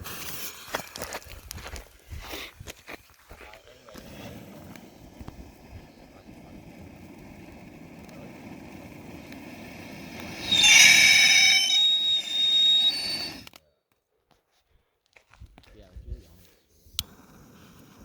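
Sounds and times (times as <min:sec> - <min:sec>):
firework fountain rushing: 0:03.8 - 0:13.5
high whistling squeal: 0:09.8 - 0:13.5.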